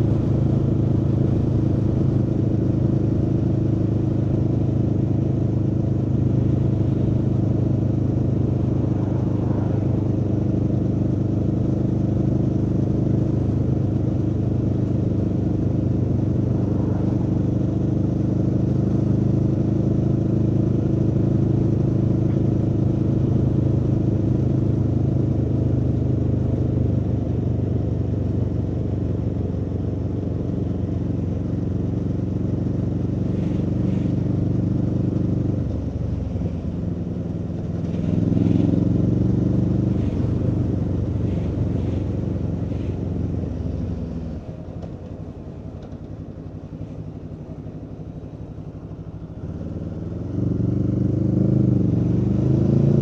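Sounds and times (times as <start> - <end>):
motorcycle engine revving: 31.9 - 53.0.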